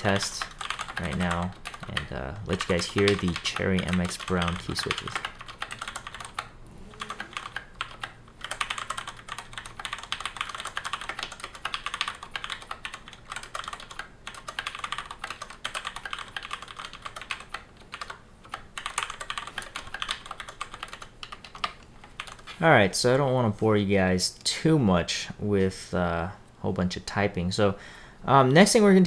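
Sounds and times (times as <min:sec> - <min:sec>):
typing on mechanical keyboard: 0:00.0 - 0:22.6.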